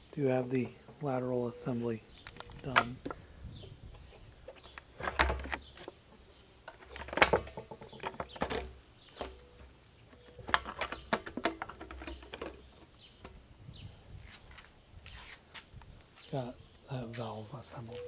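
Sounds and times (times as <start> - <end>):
plastic parts clicking and knocking: 4.4 - 6.0, 6.6 - 13.4.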